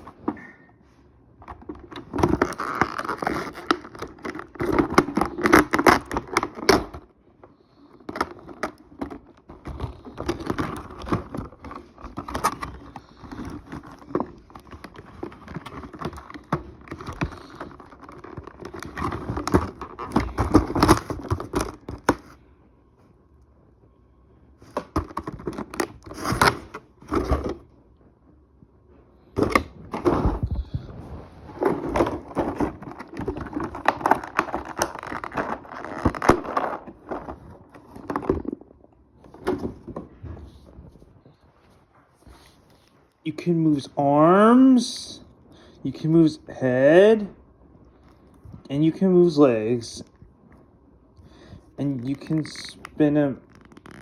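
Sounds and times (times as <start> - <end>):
plastic packaging crackling: 1.5 - 7.1, 7.7 - 22.3, 29.4 - 38.9, 51.9 - 54.0.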